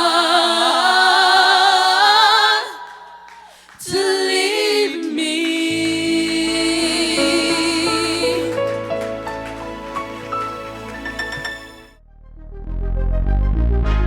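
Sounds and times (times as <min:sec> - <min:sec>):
vocal group singing a cappella: 0:00.0 - 0:09.1.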